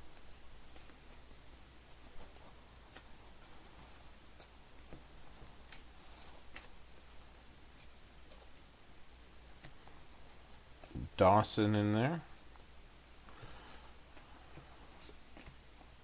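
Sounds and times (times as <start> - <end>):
steady low hum: 8.8 - 15.4.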